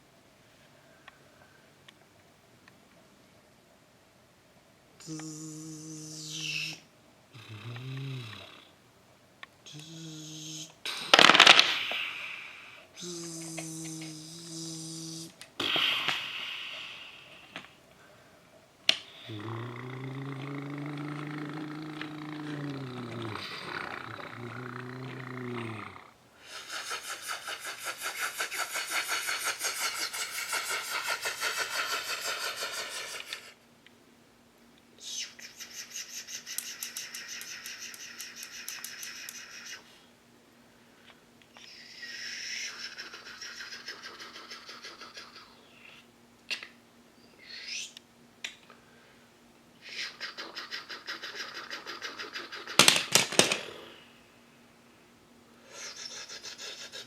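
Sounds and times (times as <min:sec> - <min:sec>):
toy blocks clattering down: 0:11.1 - 0:11.9, 0:52.8 - 0:53.7.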